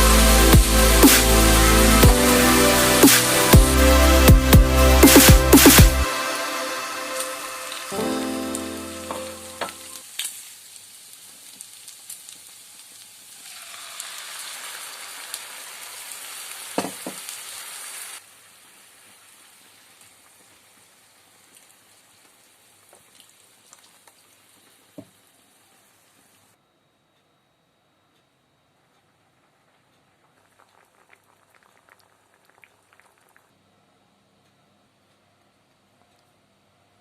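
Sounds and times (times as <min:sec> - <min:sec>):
faint hiss: 0:00.0 - 0:26.6
food sizzling in a frying pan: 0:09.9 - 0:25.9.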